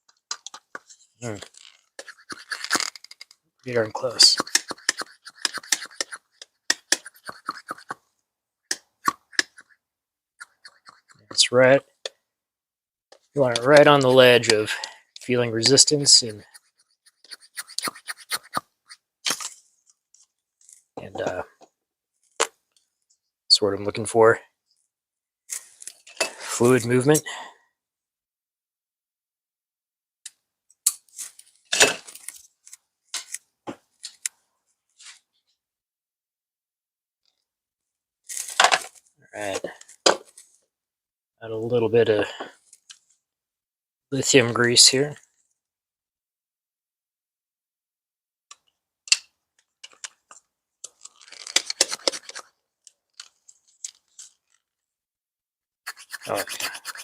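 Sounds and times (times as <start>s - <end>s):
plastic parts clicking and knocking: 0.0s - 3.4s, 48.5s - 54.6s.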